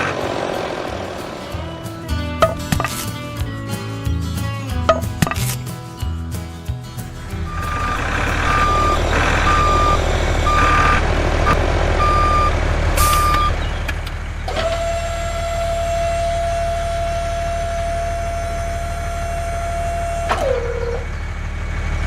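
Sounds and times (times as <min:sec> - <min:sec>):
engine rumble: 0:00.0 - 0:22.0
steady even-pitched whine: 0:07.3 - 0:14.4
truck reversing beeper: 0:07.5 - 0:14.7.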